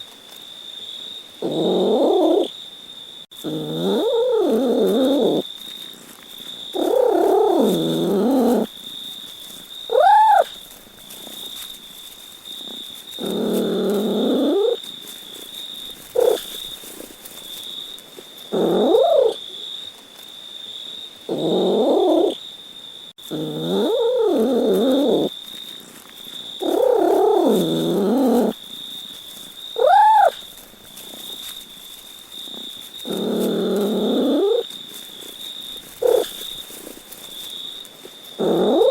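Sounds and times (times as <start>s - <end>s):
cat chirping: 1.4s - 2.5s, 3.5s - 5.4s, 6.8s - 8.7s, 9.9s - 10.6s, 13.2s - 14.8s, 16.2s - 16.6s, 18.6s - 19.4s, 21.3s - 22.4s, 23.3s - 25.3s, 26.6s - 28.5s, 29.8s - 30.4s, 33.1s - 34.6s, 36.0s - 36.4s, 38.4s - 38.9s
cat meowing: 9.9s - 10.6s, 16.2s - 16.4s, 18.6s - 19.4s, 29.8s - 30.4s.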